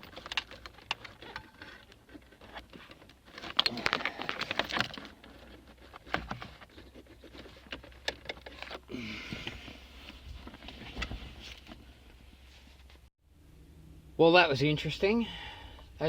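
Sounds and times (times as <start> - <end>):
plastic and metal clicks and knocks: 0.0 - 8.8
rustling: 0.0 - 13.1.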